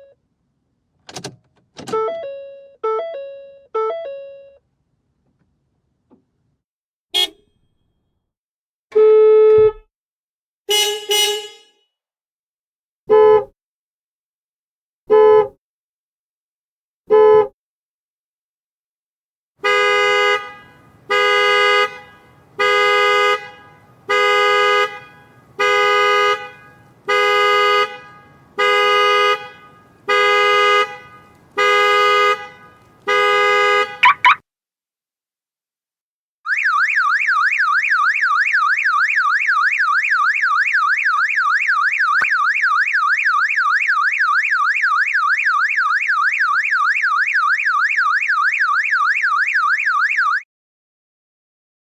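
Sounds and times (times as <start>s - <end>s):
car horn honking: 7.2s - 7.6s, 10.7s - 11.7s, 19.6s - 34.4s
car alarm chirp: 19.9s - 34.4s, 36.5s - 50.5s.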